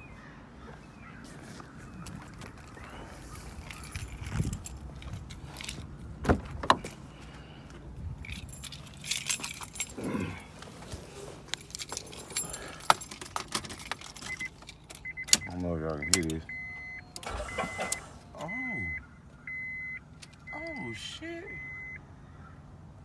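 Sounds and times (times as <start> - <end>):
keys jangling: 3.5 - 5.9, 8.2 - 10.5, 11.4 - 15.5.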